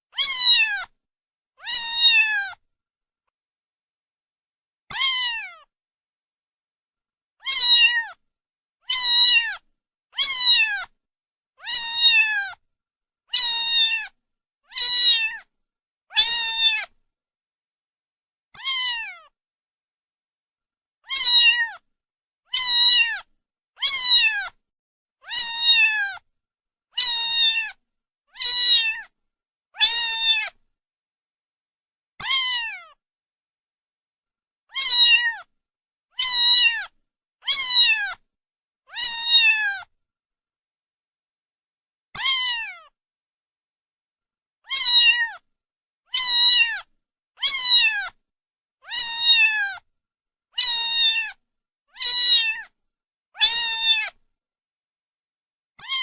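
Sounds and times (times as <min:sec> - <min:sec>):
cat meowing: 0:00.1 - 0:01.0, 0:01.6 - 0:02.6, 0:04.9 - 0:05.7, 0:07.4 - 0:08.2, 0:08.9 - 0:09.6, 0:10.2 - 0:11.0, 0:11.6 - 0:12.6, 0:13.3 - 0:15.5, 0:16.1 - 0:17.0, 0:18.5 - 0:19.4, 0:21.0 - 0:21.8, 0:22.5 - 0:24.6, 0:25.2 - 0:26.2, 0:27.0 - 0:29.1, 0:29.8 - 0:30.6, 0:32.2 - 0:33.0, 0:34.7 - 0:35.5, 0:36.2 - 0:38.2, 0:38.9 - 0:39.9, 0:42.2 - 0:43.0, 0:44.6 - 0:45.4, 0:46.1 - 0:48.2, 0:48.8 - 0:49.8, 0:50.6 - 0:52.7, 0:53.4 - 0:54.2, 0:55.8 - 0:56.0.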